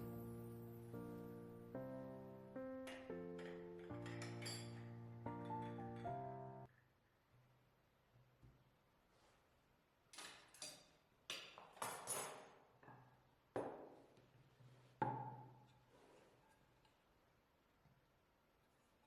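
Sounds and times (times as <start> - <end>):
crockery clinking and knocking: 2.8 - 6.6, 11.7 - 13.0.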